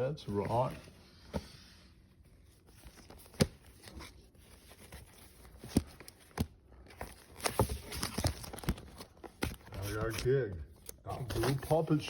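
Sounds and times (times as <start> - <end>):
cardboard sleeves sliding and rustling: 0.3 - 9.1.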